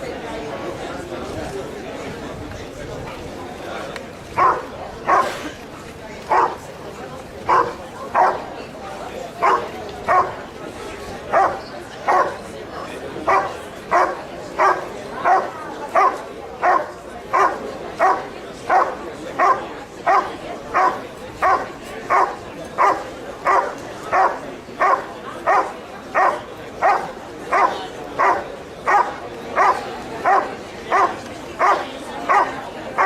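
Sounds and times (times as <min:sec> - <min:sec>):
dog barking: 0:04.4 - 0:05.4, 0:06.3 - 0:06.6, 0:07.5 - 0:08.4, 0:09.4 - 0:10.3, 0:11.3 - 0:12.4, 0:13.3 - 0:33.0.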